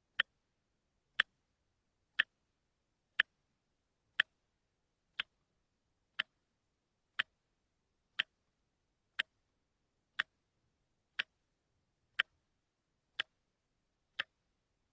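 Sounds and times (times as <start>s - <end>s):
wristwatch ticking: 2.2s - 2.4s, 3.2s - 3.4s, 4.1s - 4.4s, 5.1s - 5.4s, 6.1s - 6.4s, 7.1s - 7.4s, 8.2s - 8.4s, 9.1s - 9.4s, 10.2s - 10.4s, 11.2s - 11.4s, 12.1s - 12.4s, 13.2s - 13.4s, 14.1s - 14.4s.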